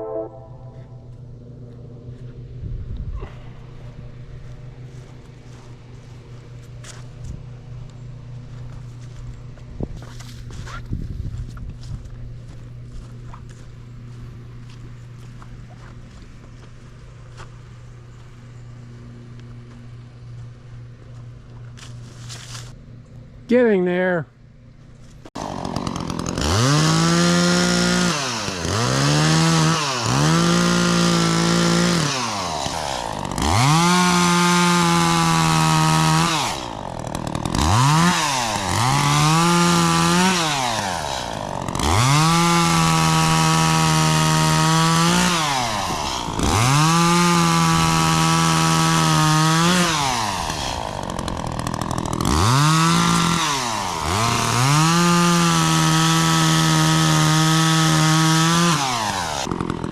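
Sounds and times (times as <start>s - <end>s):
chainsaw cutting wood: 25.3s - 59.9s.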